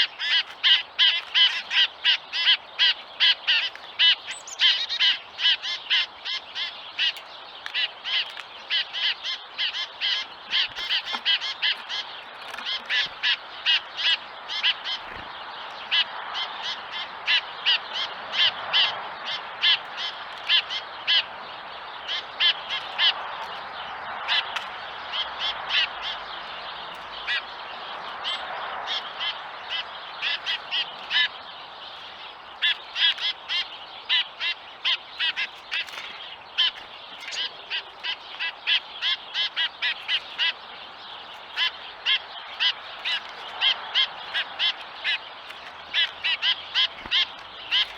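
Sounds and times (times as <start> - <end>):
songbirds calling: 0.0 - 47.9.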